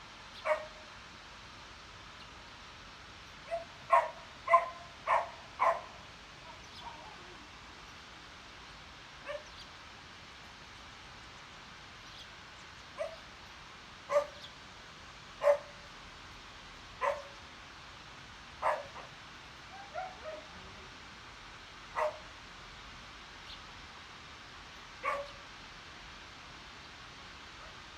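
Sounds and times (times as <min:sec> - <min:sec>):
background hiss: 0:00.0 - 0:27.9
dog barking: 0:00.4 - 0:00.8, 0:03.5 - 0:06.0, 0:09.2 - 0:09.5, 0:13.0 - 0:13.2, 0:14.1 - 0:14.4, 0:15.4 - 0:15.8, 0:17.0 - 0:17.4, 0:18.6 - 0:19.1, 0:19.7 - 0:20.6, 0:22.0 - 0:22.3, 0:25.0 - 0:25.4.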